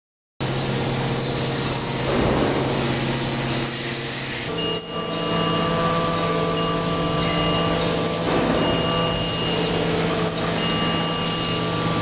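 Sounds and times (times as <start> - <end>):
machining equipment humming: 0.4 - 12.0
faint high whine: 2.6 - 12.0.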